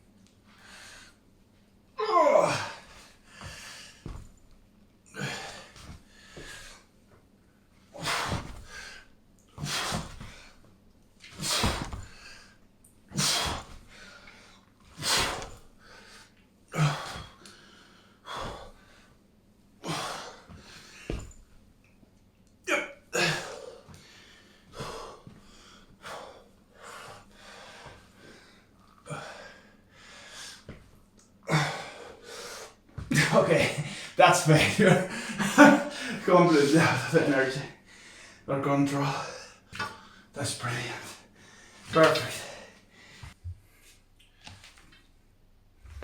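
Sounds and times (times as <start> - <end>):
man exhaling forcefully: 9.6 - 10.4, 11.4 - 12.4, 13.2 - 14.1, 15.0 - 15.6.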